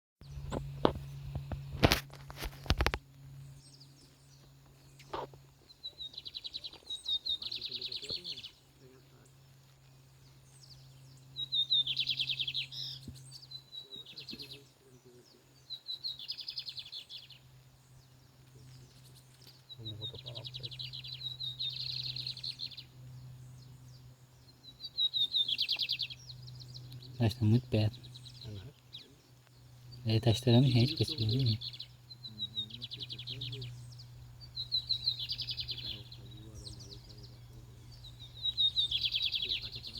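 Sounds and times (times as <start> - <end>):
faint low hum: 0.2 - 39.9
bird singing high trill: 5.7 - 9.3, 10.2 - 39.9.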